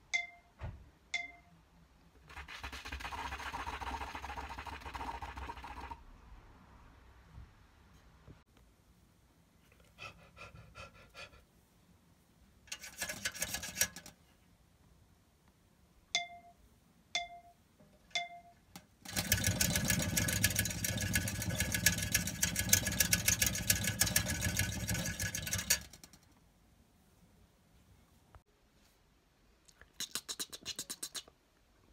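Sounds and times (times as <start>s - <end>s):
short beeps: 0.1s - 0.6s, 1.2s - 1.5s, 16.2s - 16.6s, 17.2s - 17.6s, 18.2s - 18.6s
short rattle: 19.0s - 26.4s.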